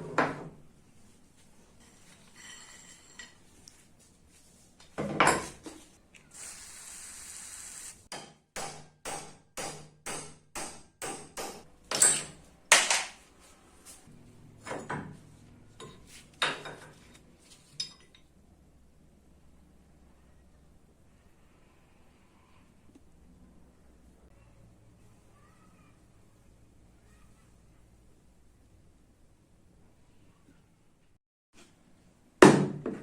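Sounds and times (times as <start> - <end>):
short hiss: 6.3 - 8.1
hammer clanking on metal: 8.1 - 13.1.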